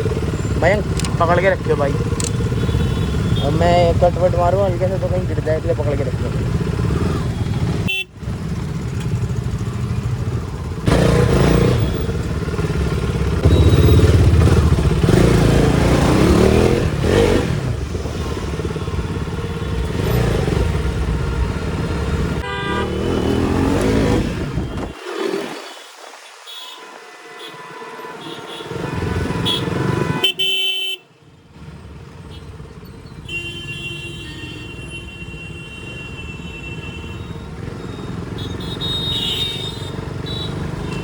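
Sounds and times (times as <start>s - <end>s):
motorcycle engine running: 0.0s - 4.0s, 5.5s - 24.7s
vehicle horns honking: 2.2s - 4.1s, 7.0s - 8.2s, 22.2s - 25.0s, 26.5s - 31.2s, 33.2s - 41.0s.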